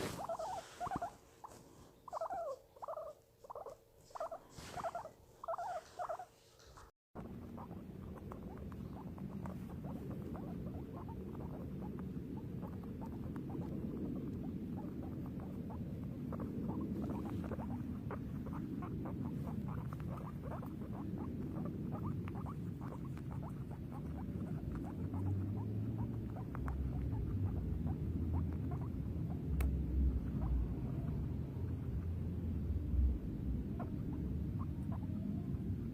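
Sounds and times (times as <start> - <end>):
guinea pig clicking: 0.2 - 35.9
low rumble: 7.2 - 35.9
deep hum: 25.6 - 35.9.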